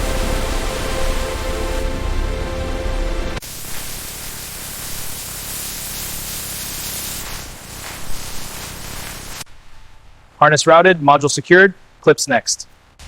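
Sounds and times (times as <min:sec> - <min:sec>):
background music with deep bass: 0:00.0 - 0:03.4
steady hissing noise: 0:00.0 - 0:13.0.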